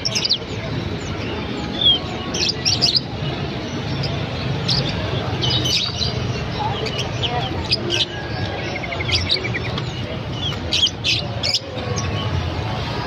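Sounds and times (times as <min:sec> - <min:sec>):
songbirds chirping: 0:00.0 - 0:13.0.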